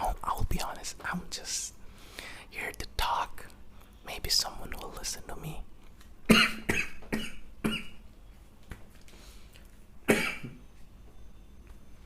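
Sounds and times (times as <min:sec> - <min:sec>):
person coughing: 0:06.3 - 0:08.0, 0:10.1 - 0:10.6.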